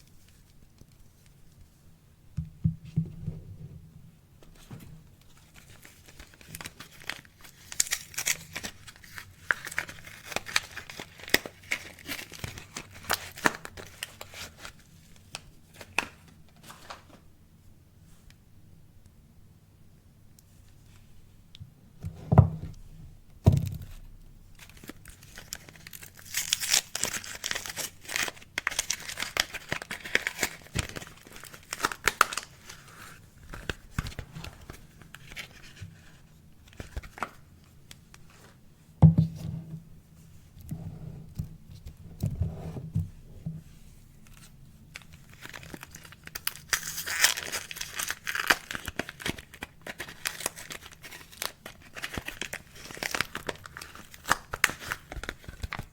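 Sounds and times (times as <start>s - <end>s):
packaging tearing and crinkling: 5.5s - 14.7s, 24.6s - 35.8s, 44.9s - 55.9s.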